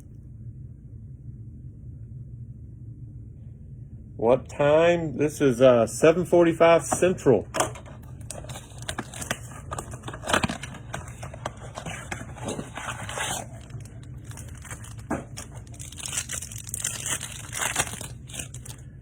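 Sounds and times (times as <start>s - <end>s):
wrappers tearing and crinkling: 8.1s - 18.9s.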